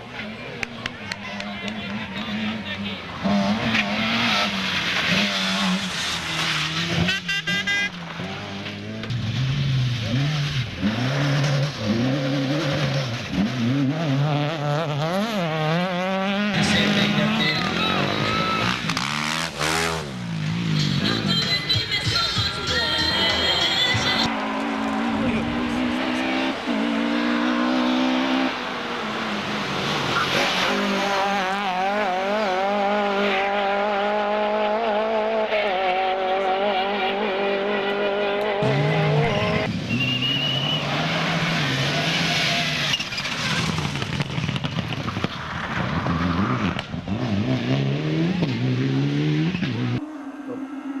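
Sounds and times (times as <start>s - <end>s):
race car engines revving: 0.0s - 51.0s
tyre squeal: 17.2s - 19.0s, 39.2s - 44.0s.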